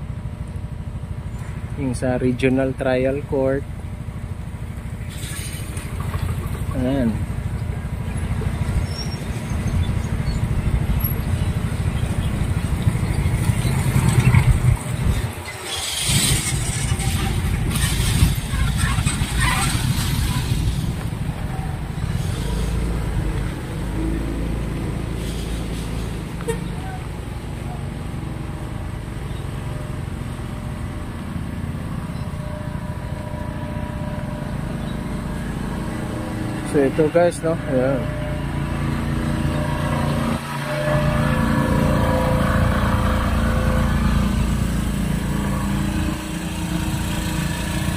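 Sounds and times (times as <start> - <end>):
vehicle road noise: 0.0 - 47.9
wind buffeting microphone: 12.2 - 22.4.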